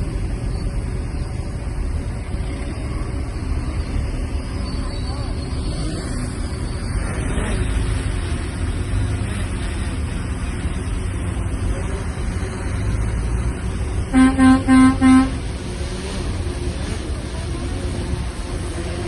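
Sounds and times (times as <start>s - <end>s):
diesel engine running: 0.0s - 19.0s
vehicle horn beeps: 14.1s - 15.4s.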